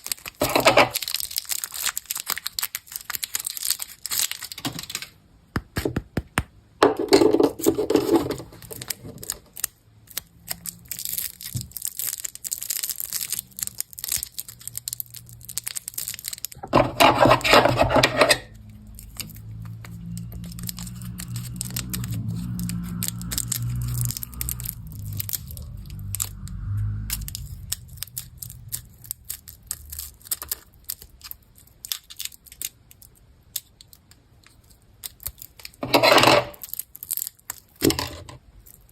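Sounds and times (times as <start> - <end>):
candy wrappers crinkling: 0.0 - 5.2, 7.2 - 38.9
loud wrapper rips: 0.0 - 5.2, 7.5 - 38.9
low rumble: 18.4 - 30.3.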